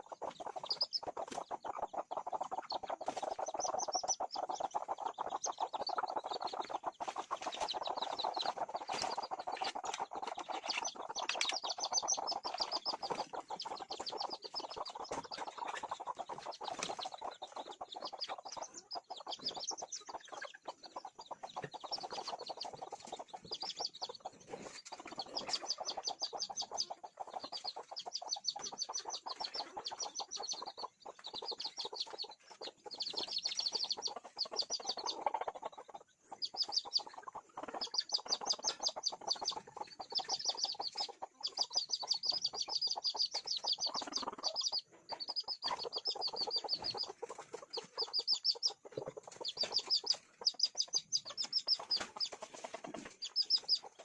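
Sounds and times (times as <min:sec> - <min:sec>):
chickens clucking: 0:00.0 - 0:54.0
chicks peeping: 0:00.0 - 0:54.0.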